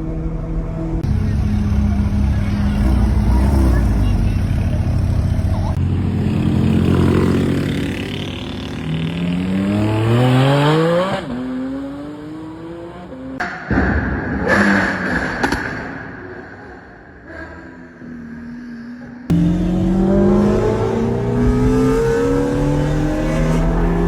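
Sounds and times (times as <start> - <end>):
sports car engine revving: 1.0 - 13.4, 19.3 - 24.0.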